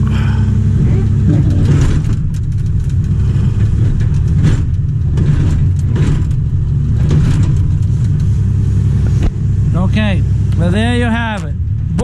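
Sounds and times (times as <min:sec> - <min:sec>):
diesel engine running: 0:00.0 - 0:12.0
short knocks and scrapes: 0:00.9 - 0:09.4.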